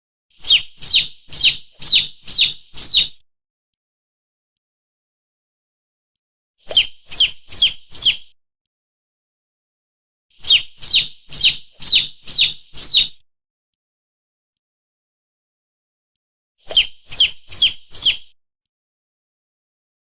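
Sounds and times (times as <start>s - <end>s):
shrill bird-like lure call chirps: 0.3s - 3.2s, 6.6s - 8.4s, 10.3s - 13.2s, 16.6s - 18.4s.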